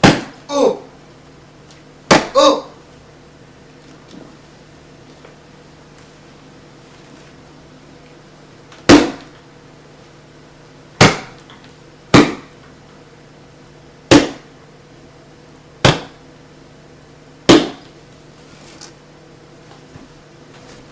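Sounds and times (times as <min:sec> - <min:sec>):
sharp knocks: 0:00.0 - 0:00.4, 0:08.9 - 0:09.3, 0:12.2 - 0:12.5, 0:15.8 - 0:16.2, 0:17.5 - 0:17.8
faint steady hum: 0:00.0 - 0:20.9.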